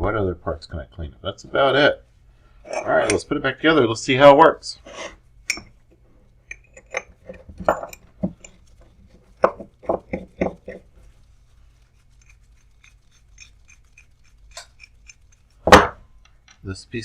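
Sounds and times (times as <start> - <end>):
metal parts clicking and knocking: 14.5 - 16.7.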